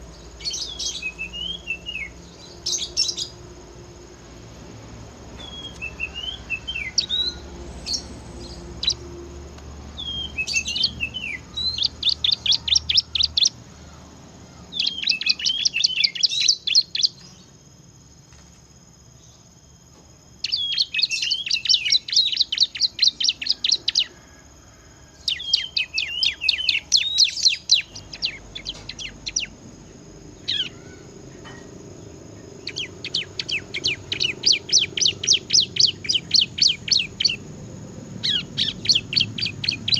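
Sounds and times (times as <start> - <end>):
bird singing rapid sharp notes: 5.3 - 9.2, 9.9 - 13.6, 14.6 - 17.4, 25.3 - 31.1, 32.4 - 37.5, 38.2 - 39.9.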